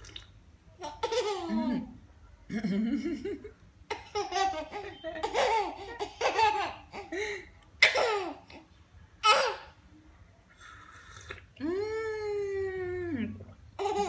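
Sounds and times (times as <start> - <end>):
baby laughing: 0.8 - 1.9, 3.9 - 8.6, 13.8 - 14.0.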